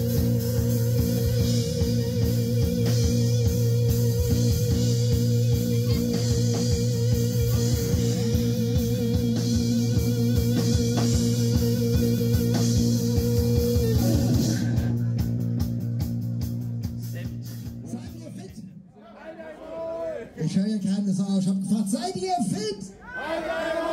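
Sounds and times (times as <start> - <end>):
live rock band music: 0.0 - 18.6.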